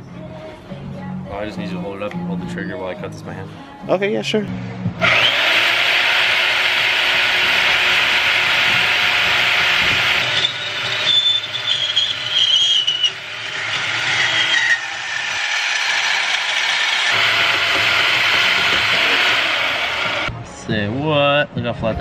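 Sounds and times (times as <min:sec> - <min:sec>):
power saw grinding metal: 0:05.0 - 0:20.3.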